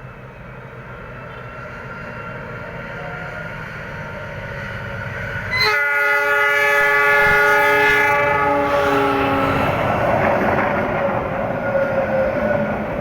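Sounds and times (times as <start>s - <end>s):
multi-tone train air horn: 5.5s - 9.8s.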